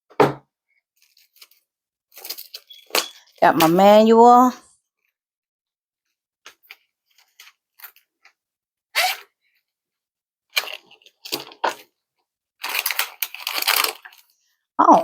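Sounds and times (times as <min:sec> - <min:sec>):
packaging crinkling: 0:01.0 - 0:03.4, 0:12.6 - 0:14.4.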